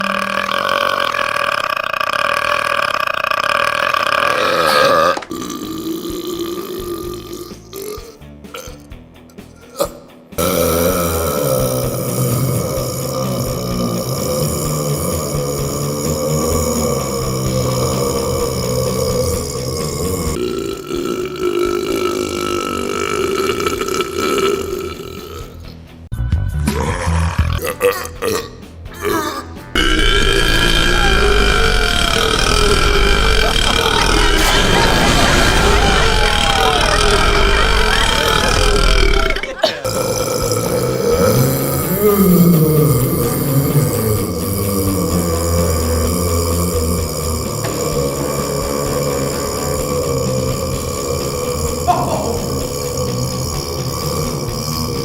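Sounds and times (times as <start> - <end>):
person burping: 0.0 - 25.8, 26.7 - 55.0.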